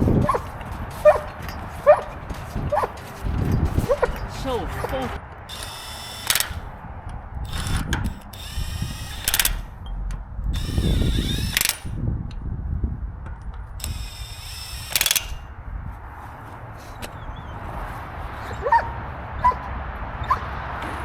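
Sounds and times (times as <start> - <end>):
power tool motor: 5.5 - 6.8, 7.4 - 9.8, 10.6 - 12.0, 13.8 - 15.5.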